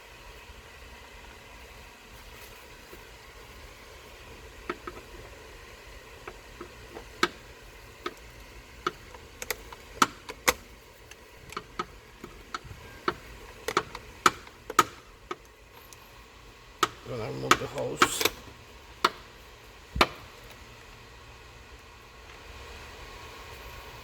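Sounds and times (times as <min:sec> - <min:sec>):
hand tools tapping on metal: 0:08.0 - 0:16.0, 0:16.8 - 0:19.3.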